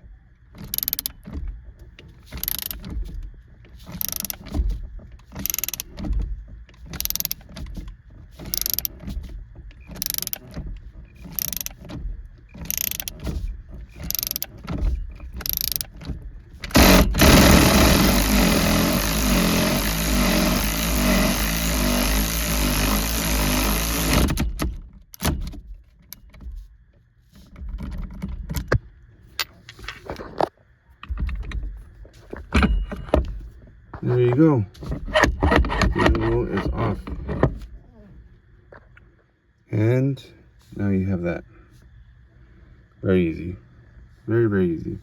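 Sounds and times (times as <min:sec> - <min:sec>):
ratchet wrench clicking: 0:00.6 - 0:01.2, 0:02.4 - 0:02.8, 0:04.0 - 0:04.5, 0:05.4 - 0:05.9, 0:07.0 - 0:07.5, 0:08.5 - 0:09.0, 0:09.9 - 0:10.5, 0:11.3 - 0:11.8, 0:12.6 - 0:13.2, 0:14.0 - 0:14.5, 0:15.4 - 0:15.9, 0:16.7 - 0:25.4.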